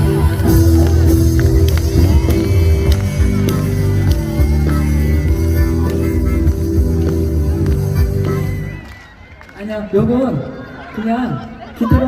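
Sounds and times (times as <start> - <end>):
loud music with bass: 0.0 - 8.8.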